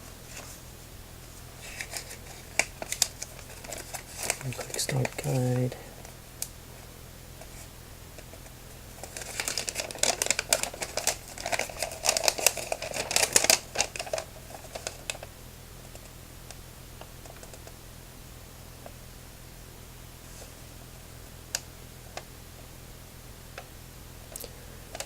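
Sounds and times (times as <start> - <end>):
paper rustling and crinkling: 0.1 - 6.2, 7.4 - 15.3.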